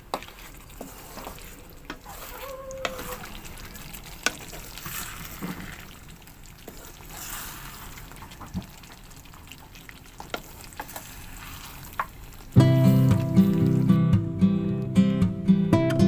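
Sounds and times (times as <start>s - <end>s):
food sizzling in a pan: 0.0s - 14.1s
utensil clicking against pan: 4.1s - 4.5s.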